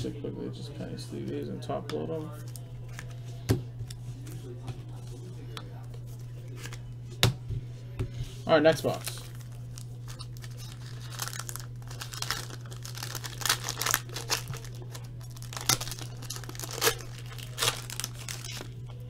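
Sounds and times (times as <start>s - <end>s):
plastic wrapping crinkling and tearing: 8.8s - 19.0s.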